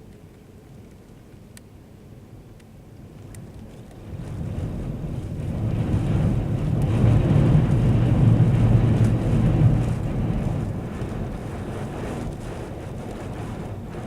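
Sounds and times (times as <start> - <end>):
wind gusting on microphone: 3.0 - 14.0.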